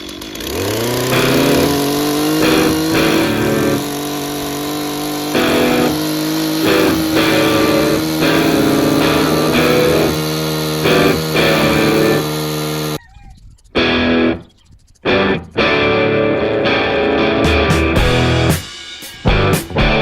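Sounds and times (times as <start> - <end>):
chainsaw cutting wood: 0.0 - 13.0
chainsaw revving: 0.0 - 13.0, 15.0 - 18.7.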